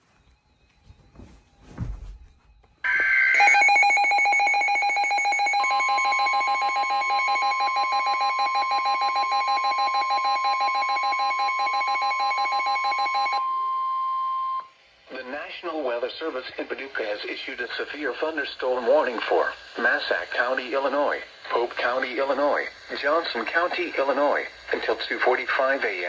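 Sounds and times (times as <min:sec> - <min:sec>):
rapidly pulsing electronic alarm: 0:02.8 - 0:14.6.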